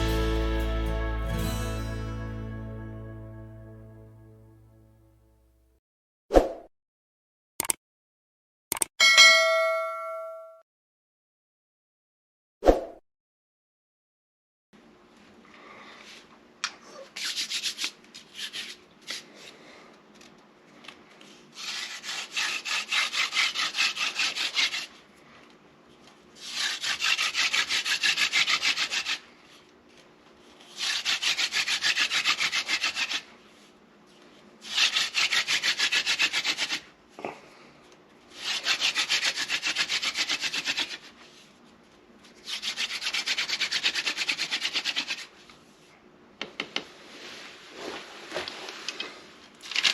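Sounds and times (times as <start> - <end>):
wooden spindle rasping on wood: 21.6 - 24.9.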